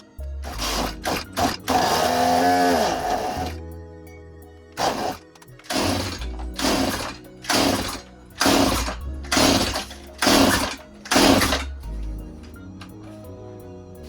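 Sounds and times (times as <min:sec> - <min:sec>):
background music with beat: 0:00.0 - 0:14.0.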